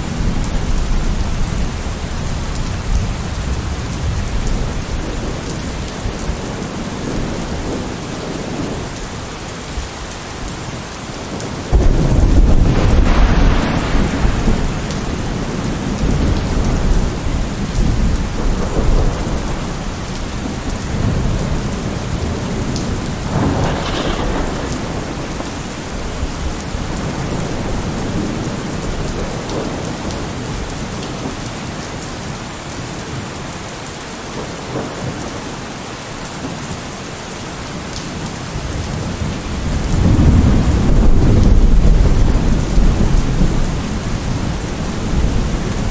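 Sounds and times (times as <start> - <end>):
heavy rain falling: 0.0 - 45.9
rolling thunder: 11.3 - 31.4, 38.3 - 45.9.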